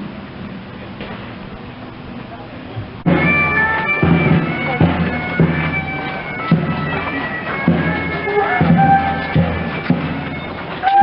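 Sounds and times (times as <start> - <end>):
bagpipes playing a tune: 3.1 - 11.0.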